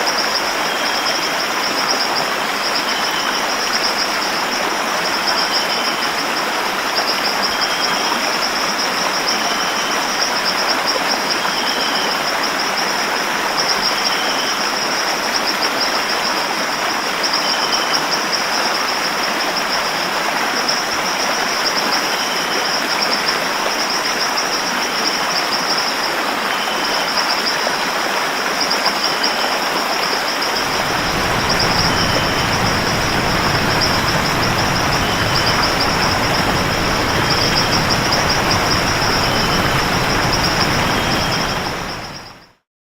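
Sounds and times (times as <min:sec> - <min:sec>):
deep rumble: 0:30.6 - 0:42.4
high pulsing buzz: 0:30.6 - 0:42.4
waterfall rushing: 0:30.6 - 0:42.5.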